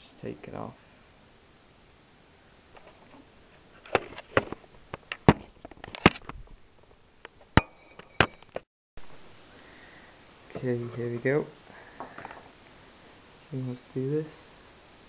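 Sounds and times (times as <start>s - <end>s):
plastic and metal parts clacking: 3.8s - 6.4s.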